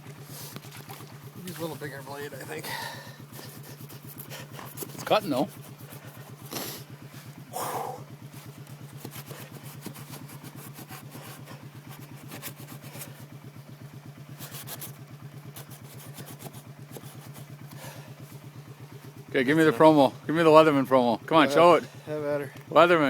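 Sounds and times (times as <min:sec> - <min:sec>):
atv engine idling: 0:00.0 - 0:23.0
small saw blade cutting wood: 0:03.3 - 0:06.8, 0:08.5 - 0:13.4, 0:14.3 - 0:18.3.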